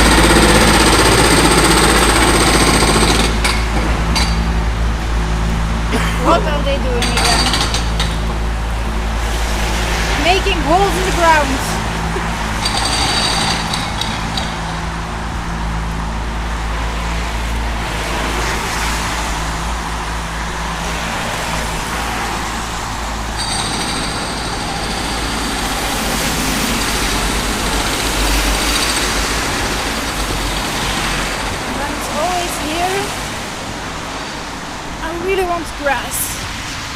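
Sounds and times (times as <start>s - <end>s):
drilling machine engine humming: 0.0s - 35.0s
high whine: 0.0s - 35.9s.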